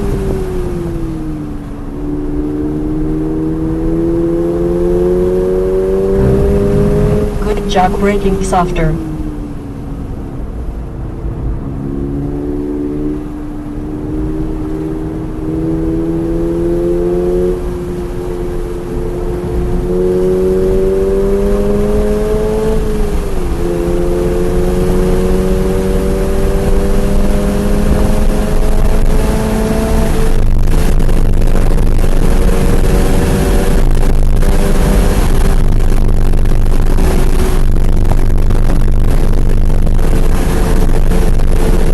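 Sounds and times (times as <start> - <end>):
car engine revving: 2.0 - 9.2, 12.0 - 41.9
wind noise on microphone: 5.8 - 7.8, 19.2 - 41.9.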